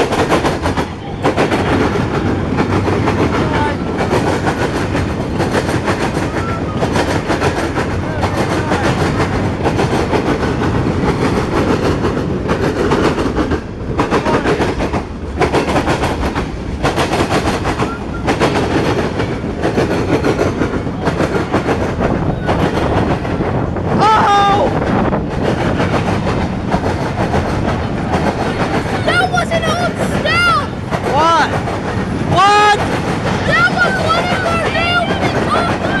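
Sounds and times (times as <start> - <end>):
freight train rumbling: 0.0 - 36.0
wheels clacking over rail joints: 0.0 - 36.0.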